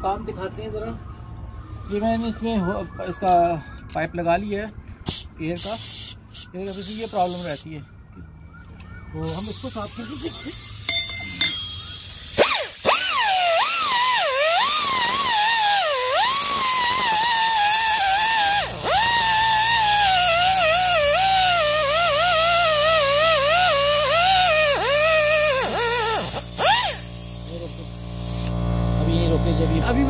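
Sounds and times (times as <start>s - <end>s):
air compressor humming: 9.3s - 30.0s
die grinder whining: 9.3s - 30.0s.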